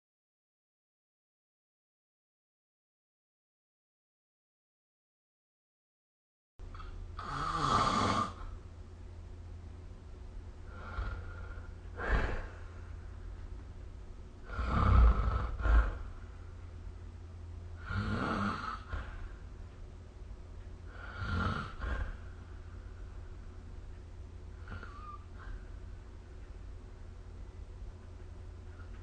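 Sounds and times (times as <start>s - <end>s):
steady low hum: 6.6s - 29.0s
person snoring: 6.8s - 8.6s, 10.7s - 12.8s, 14.4s - 16.2s, 17.8s - 19.4s, 20.9s - 22.3s, 24.6s - 25.6s
quiet breathing: 10.5s - 29.0s.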